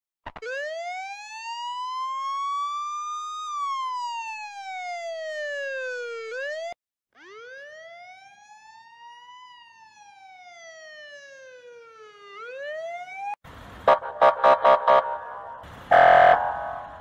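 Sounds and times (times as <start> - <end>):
harsh pulsing siren blast: 0.4 - 17.0
siren wailing: 0.4 - 17.0.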